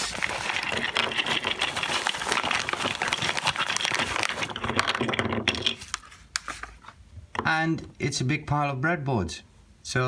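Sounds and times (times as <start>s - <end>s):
plastic packaging crinkling: 0.0s - 7.0s.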